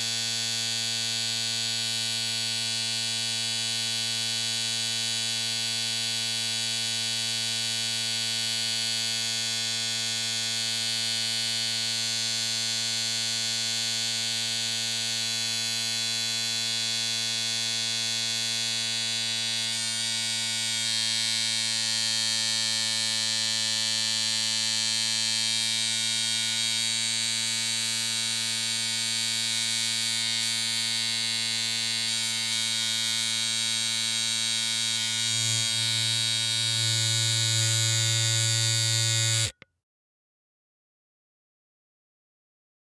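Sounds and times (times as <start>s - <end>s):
electric hair clippers buzzing: 19.0s - 39.6s.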